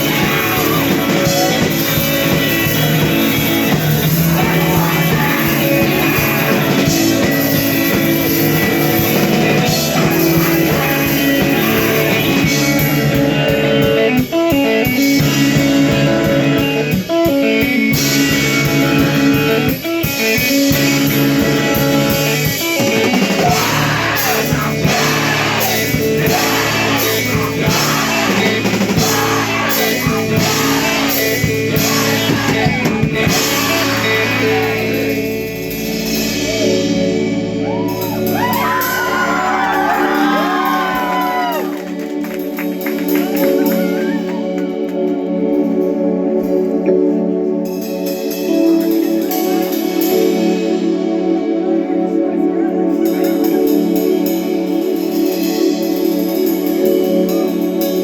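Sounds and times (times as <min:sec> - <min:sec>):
person singing: 0:00.0 - 0:13.2, 0:22.5 - 0:35.7
live rock band playing: 0:00.0 - 0:58.0.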